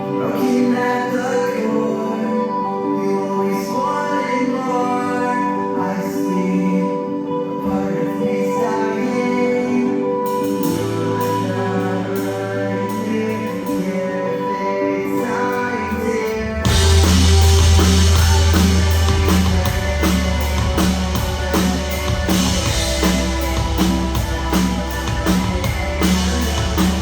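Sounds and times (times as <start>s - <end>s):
slow song with singing voice: 0.0s - 27.0s
low bass note: 16.7s - 27.0s.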